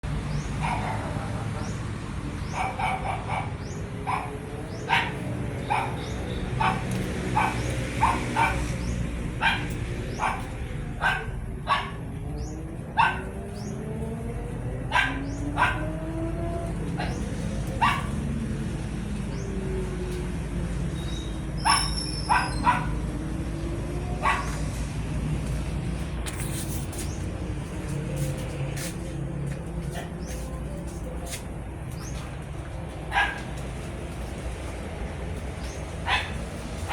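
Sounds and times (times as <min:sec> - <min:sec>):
dog barking: 0:00.6 - 0:01.7, 0:02.4 - 0:12.2, 0:12.9 - 0:13.7, 0:14.8 - 0:16.3, 0:16.9 - 0:18.3, 0:21.6 - 0:23.1, 0:24.1 - 0:24.8, 0:33.1 - 0:33.6, 0:35.6 - 0:36.9.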